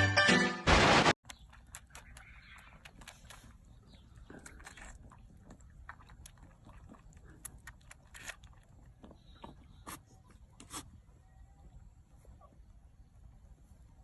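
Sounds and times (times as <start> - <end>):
chewing and crunching: 1.3 - 11.0.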